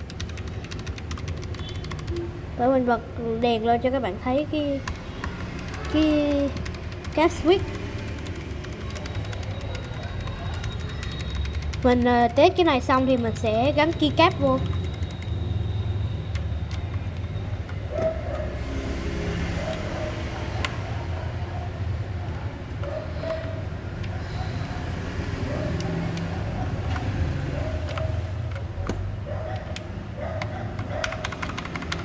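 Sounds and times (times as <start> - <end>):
mechanical keyboard switch clicks: 27.8 - 32.0.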